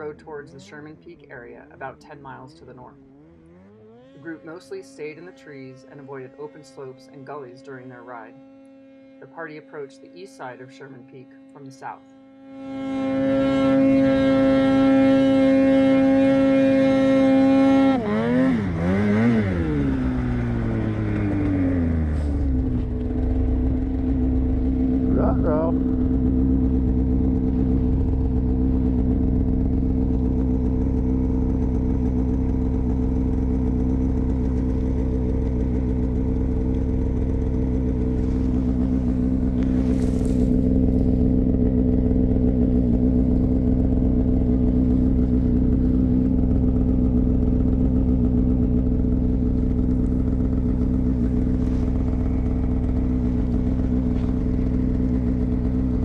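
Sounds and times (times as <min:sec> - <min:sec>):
snowmobile engine running: 0:00.0 - 0:56.0.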